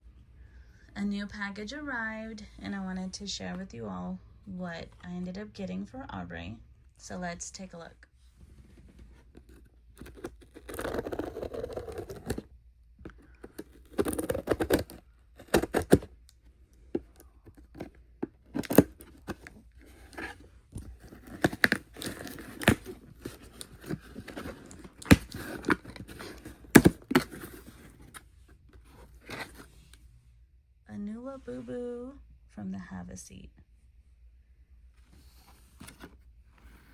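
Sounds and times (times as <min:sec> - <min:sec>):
package wrapping ripping and crinkling: 0:10.0 - 0:12.4, 0:13.4 - 0:16.1, 0:21.0 - 0:27.8.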